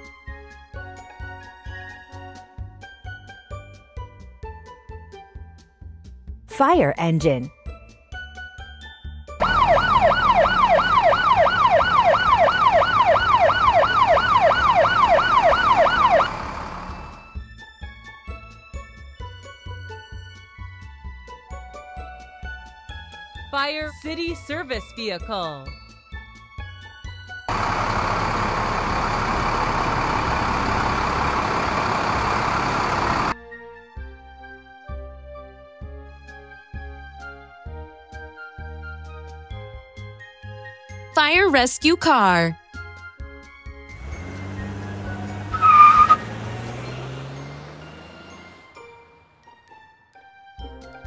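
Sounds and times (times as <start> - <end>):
fire engine siren yelping: 9.4 - 17.4, 27.5 - 33.4, 44.0 - 49.5
children's music with chiming notes: 46.7 - 51.0.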